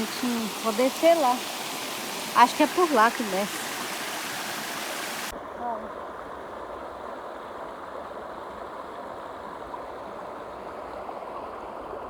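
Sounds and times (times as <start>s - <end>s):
waterfall rushing: 0.0s - 5.3s.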